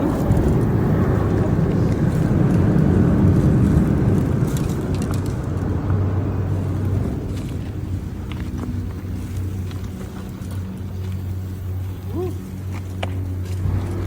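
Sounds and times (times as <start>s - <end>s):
motor running: 5.7s - 14.0s.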